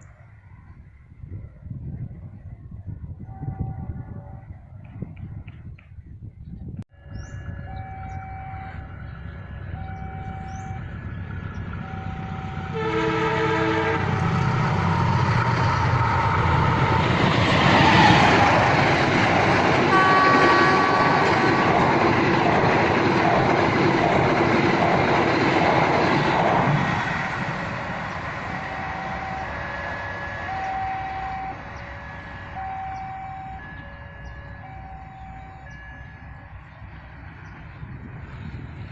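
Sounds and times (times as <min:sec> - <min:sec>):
train horn: 0:03.2 - 0:04.6, 0:09.6 - 0:10.9, 0:11.8 - 0:14.4, 0:19.9 - 0:22.1, 0:28.5 - 0:36.1
train passing with rumble: 0:06.6 - 0:38.9
two-note warning tone: 0:07.0 - 0:09.0, 0:09.6 - 0:11.0, 0:28.7 - 0:29.7, 0:30.4 - 0:36.4.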